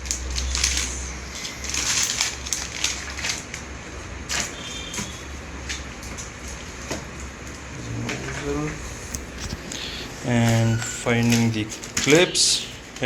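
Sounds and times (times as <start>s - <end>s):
hands rummaging through packaging: 0.0s - 7.4s, 8.1s - 13.0s
steady low hum: 0.0s - 13.0s.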